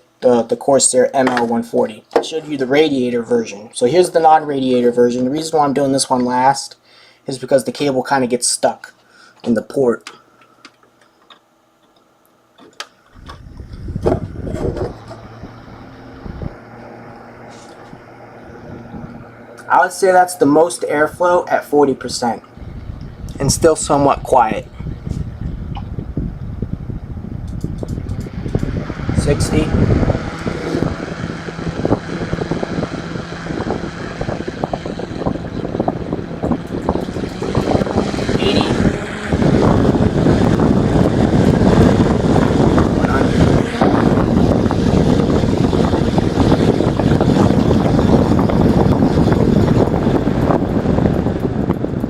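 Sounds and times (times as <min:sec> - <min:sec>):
computer fan whirring: 0:00.0 - 0:52.0
cable clicks: 0:27.4 - 0:28.8.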